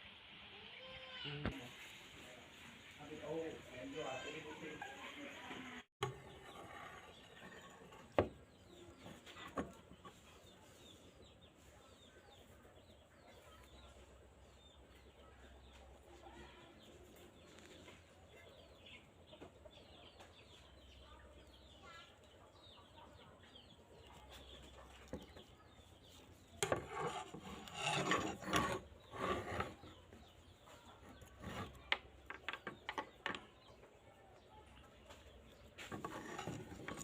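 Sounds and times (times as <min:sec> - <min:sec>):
rough scraping and rubbing: 0:03.1 - 0:08.3, 0:24.0 - 0:33.6, 0:35.0 - 0:37.0
chickens clucking: 0:07.1 - 0:26.7.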